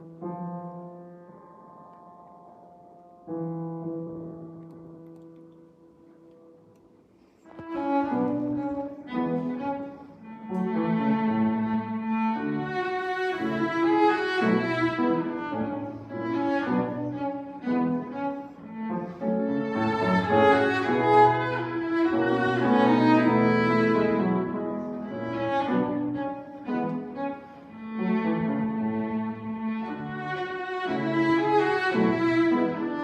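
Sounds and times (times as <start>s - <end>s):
bowed cello playing: 7.5s - 33.0s.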